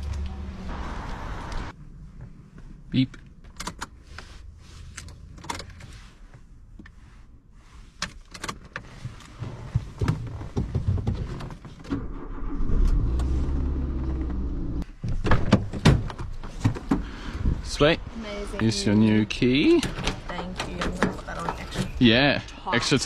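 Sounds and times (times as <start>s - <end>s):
car engine starting and running: 0.0s - 6.5s, 10.3s - 14.9s.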